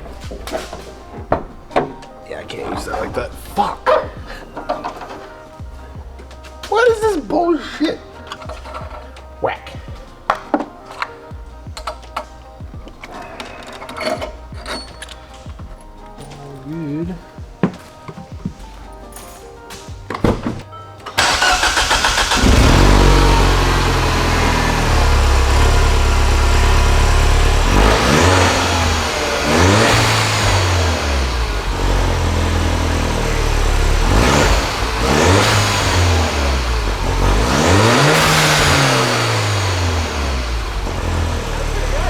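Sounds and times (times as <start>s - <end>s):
car engine starting: 0.0s - 9.5s, 21.0s - 42.0s
engine fast idle: 21.2s - 42.0s
engine revving: 21.2s - 42.0s.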